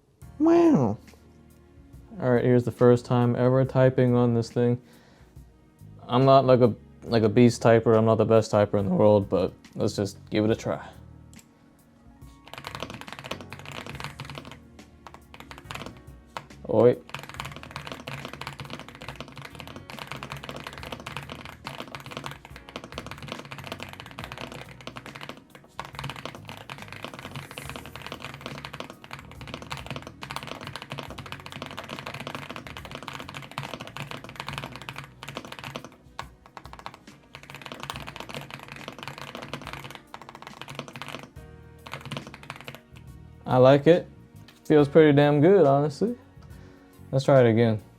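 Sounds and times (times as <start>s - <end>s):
background music: 0.0s - 47.9s
mechanical keyboard typing: 12.4s - 43.1s.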